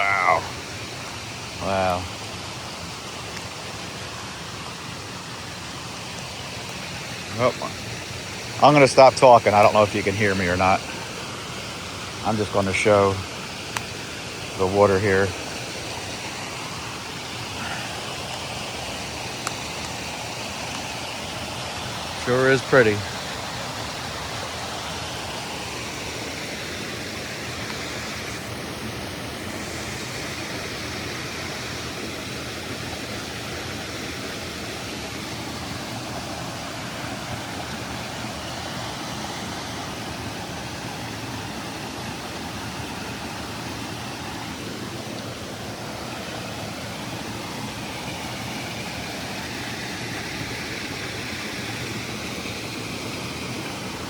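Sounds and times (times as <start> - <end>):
creek water rushing: 0.0 - 54.0.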